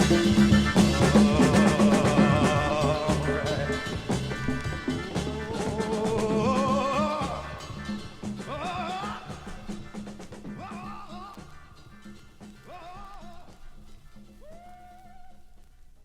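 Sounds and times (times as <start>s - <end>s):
wavering lead line: 0.0s - 12.2s
bass guitar: 0.0s - 14.6s
drums: 0.0s - 16.0s.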